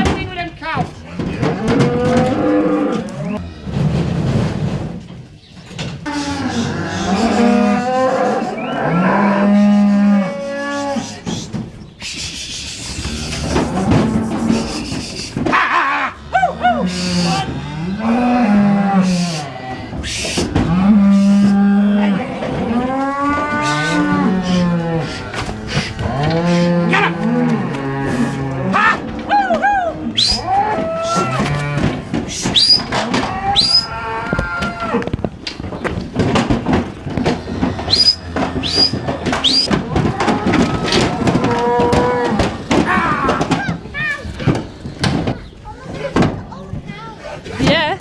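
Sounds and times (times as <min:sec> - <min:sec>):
cattle mooing: 0:01.3 - 0:03.4, 0:06.0 - 0:11.2, 0:12.9 - 0:15.0, 0:15.6 - 0:32.0, 0:32.9 - 0:35.2, 0:37.2 - 0:43.5.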